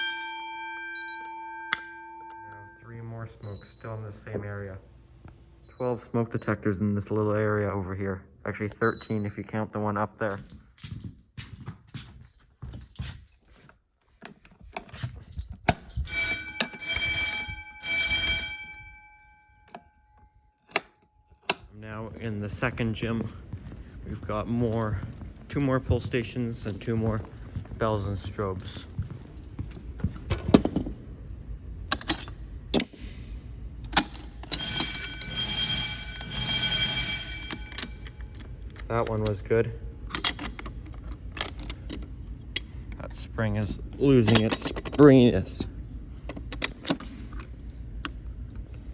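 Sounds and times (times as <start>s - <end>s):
fire alarm bell ringing: 0.0s - 4.8s, 15.9s - 27.2s, 34.0s - 39.0s
fire alarm pull station clicks: 15.6s - 18.9s, 19.6s - 21.7s, 33.8s - 39.5s, 40.1s - 42.8s.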